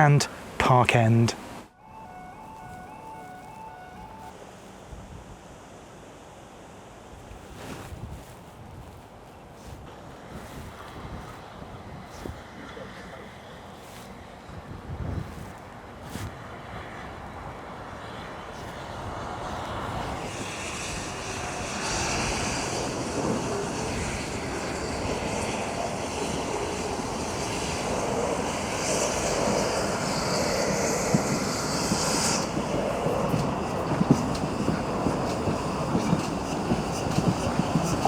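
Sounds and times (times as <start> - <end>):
train approaching: 1.7 - 4.8, 15.3 - 38.0
hiss: 18.5 - 38.0.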